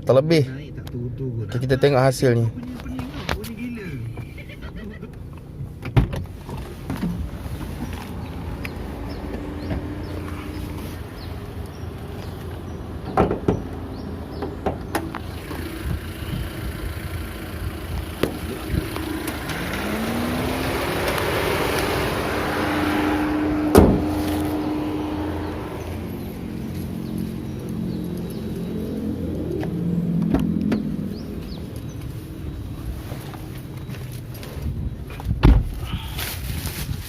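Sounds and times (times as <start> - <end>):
vehicle engine rising in pitch: 13.7 - 34.2
loud thump: 23.6 - 24.3, 35.4 - 35.8.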